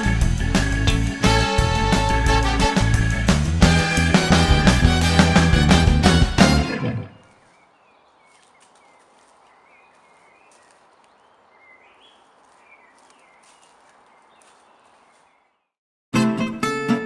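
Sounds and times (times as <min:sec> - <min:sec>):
background music: 0:00.0 - 0:07.2, 0:16.2 - 0:17.0
faint birds chirping: 0:06.9 - 0:15.8.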